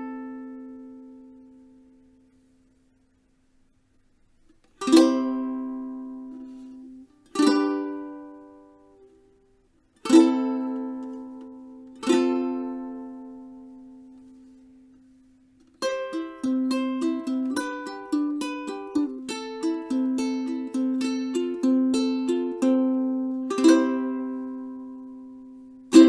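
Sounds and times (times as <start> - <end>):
ukulele chords strummed: 0.0 - 1.9, 4.7 - 9.4, 10.0 - 26.0
ukulele notes picked: 4.8 - 9.2, 10.0 - 14.7, 15.7 - 26.0.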